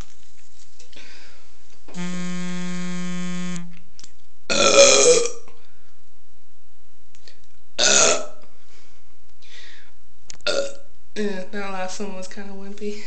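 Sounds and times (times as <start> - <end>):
steady electronic buzzing tone: 1.9 - 5.5
woman burping: 4.5 - 5.5, 10.5 - 10.8.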